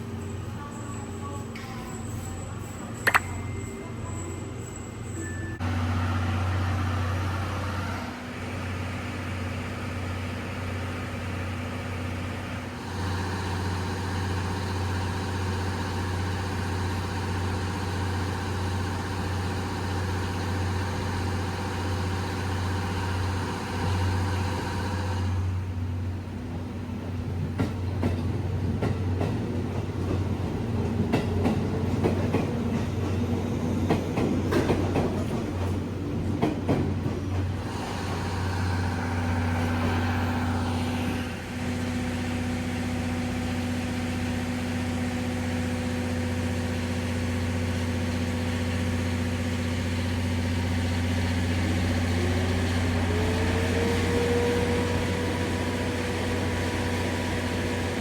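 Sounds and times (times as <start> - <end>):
train machinery hum: 0.0 - 58.0
train wheels clicking over rail joints: 27.5 - 40.6.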